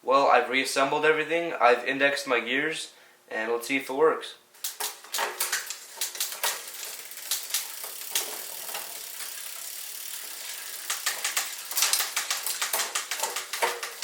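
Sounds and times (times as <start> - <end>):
bike chain whirring: 5.4 - 14.0
freehub ratcheting: 5.6 - 14.0.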